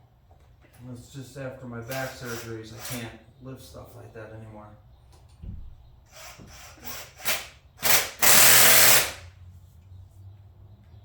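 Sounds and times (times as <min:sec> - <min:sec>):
hand-held power tool bursts: 0:01.9 - 0:03.1, 0:06.1 - 0:09.2.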